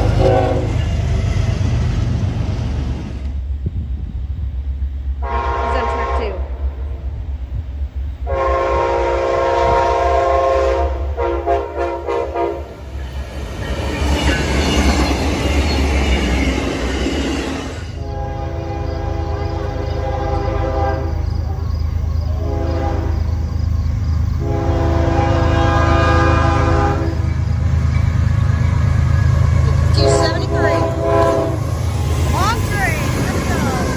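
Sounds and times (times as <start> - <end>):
locomotive air horn blasts: 0.0 - 0.8, 5.2 - 6.5, 8.3 - 12.7, 17.9 - 21.2, 22.3 - 23.3, 24.4 - 27.3, 29.9 - 31.8
rushing rail noise: 0.0 - 33.9
train rumbling: 0.0 - 33.9.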